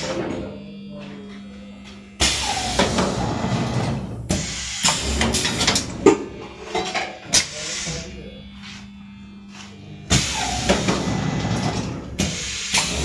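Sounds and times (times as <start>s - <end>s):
machine hissing: 2.2s - 6.1s, 7.3s - 8.2s, 10.1s - 13.0s.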